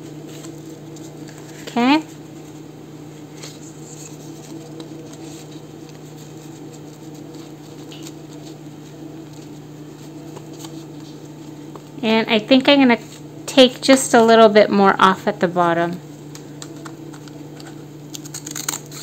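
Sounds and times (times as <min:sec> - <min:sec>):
steady low hum: 0:00.0 - 0:19.0
paper rustling: 0:00.2 - 0:01.8, 0:03.2 - 0:12.0.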